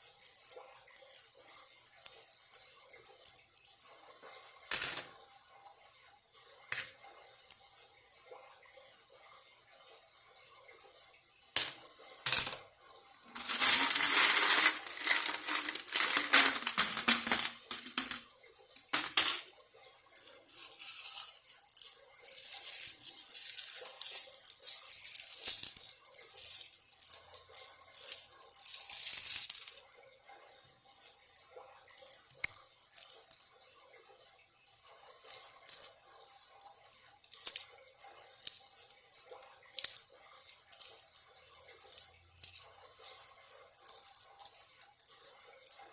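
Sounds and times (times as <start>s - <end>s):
coins set down clicking: 0.2s - 3.8s, 4.6s - 5.1s, 11.6s - 12.6s, 13.3s - 18.2s, 18.8s - 19.5s, 20.2s - 29.9s, 37.3s - 38.6s, 39.2s - 41.0s, 41.6s - 45.9s
coins jingling: 0.2s - 4.0s, 4.6s - 5.1s, 11.6s - 12.6s, 13.3s - 18.2s, 18.8s - 19.5s, 20.1s - 29.9s, 31.1s - 33.4s, 35.2s - 36.6s, 37.2s - 45.9s.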